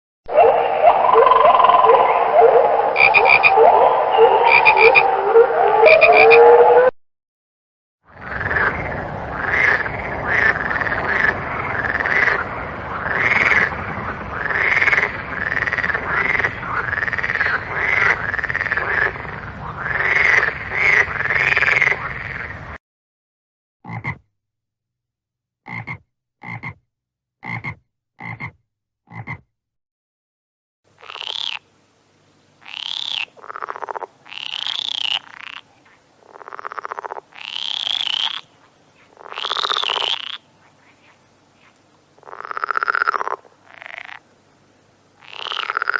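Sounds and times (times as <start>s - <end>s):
frogs croaking: 0.3s - 6.5s, 8.1s - 22.6s, 27.4s - 29.4s, 31.0s - 31.7s, 32.6s - 44.3s, 45.2s - 45.9s
rising and falling frog calls: 0.3s - 6.9s, 8.1s - 22.6s, 27.4s - 29.4s, 31.0s - 31.7s, 32.6s - 44.3s, 45.2s - 45.9s
short single frog croaks: 42.2s - 44.2s, 45.2s - 45.9s.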